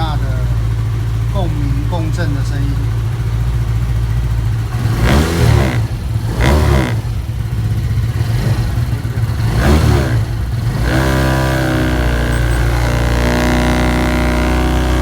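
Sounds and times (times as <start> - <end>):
scooter engine revving: 0.0 - 15.0.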